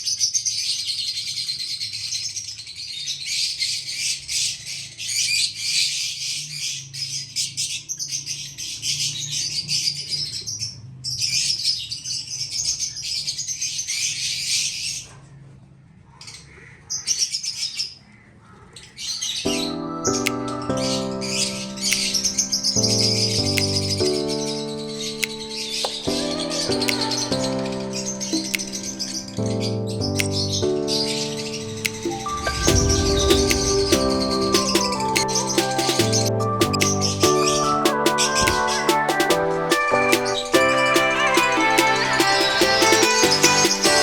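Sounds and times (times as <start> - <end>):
lovebirds chirping and squawking: 18.7 - 41.3
music: 19.5 - 44.0.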